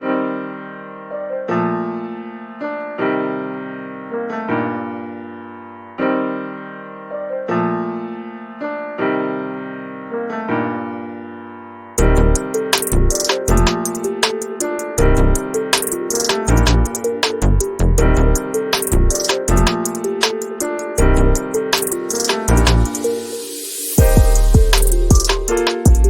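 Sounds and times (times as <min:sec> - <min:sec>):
keyboard chords: 0:00.0 - 0:26.0
drum beat: 0:12.8 - 0:14.8, 0:15.8 - 0:17.4, 0:21.8 - 0:23.0, 0:24.0 - 0:26.0.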